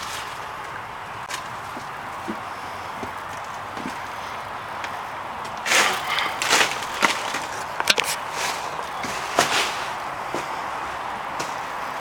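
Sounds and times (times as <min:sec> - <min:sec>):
crunches on loose rubble: 0:00.0 - 0:09.5.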